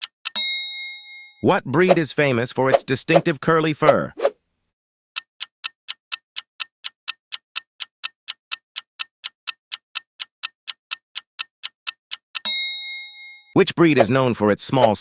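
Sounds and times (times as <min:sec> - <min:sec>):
clock ticking: 0:00.0 - 0:00.4, 0:05.2 - 0:12.5.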